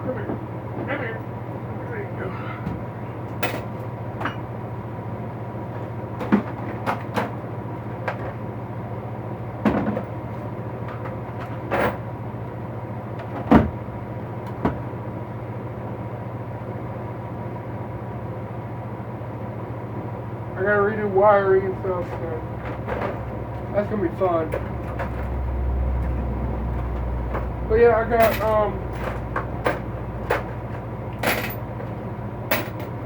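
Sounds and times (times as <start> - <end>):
steady low hum: 0.0 - 33.0
tools knocking and clinking: 3.4 - 4.5, 28.2 - 33.0.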